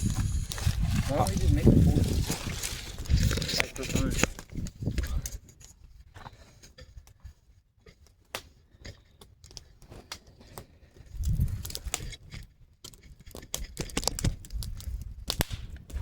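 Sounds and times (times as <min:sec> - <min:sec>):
low rumbles: 0:00.0 - 0:05.3
clicks and snaps of handling: 0:07.9 - 0:16.0.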